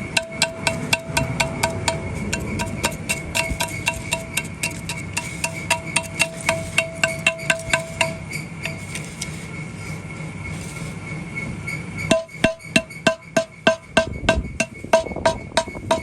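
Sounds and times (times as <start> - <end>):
hammer striking ringing steel: 0.0 - 9.2, 12.1 - 16.0.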